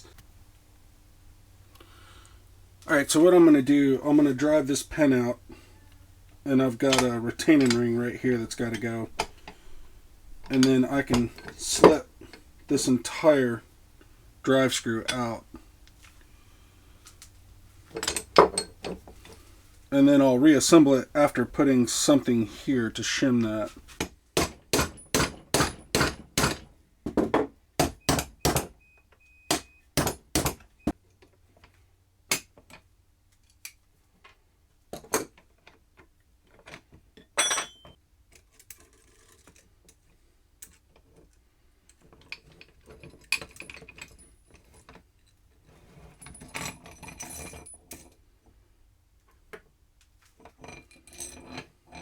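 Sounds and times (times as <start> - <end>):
hammer striking metal punch: 24.4 - 26.6, 27.8 - 28.7, 29.5 - 30.6.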